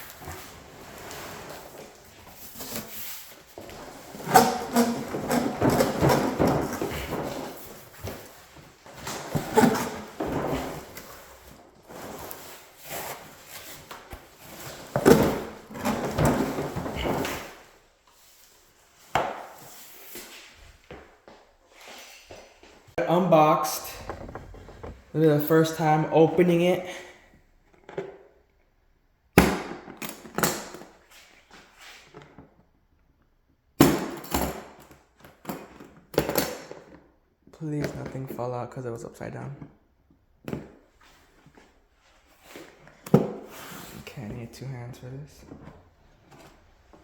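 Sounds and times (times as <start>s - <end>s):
scraping and rubbing of packaging: 0.1s - 17.7s.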